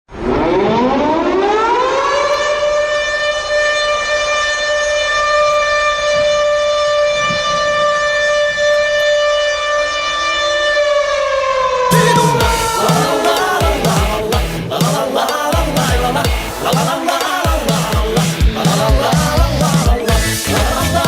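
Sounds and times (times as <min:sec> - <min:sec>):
siren goal horn: 0:00.1 - 0:14.6.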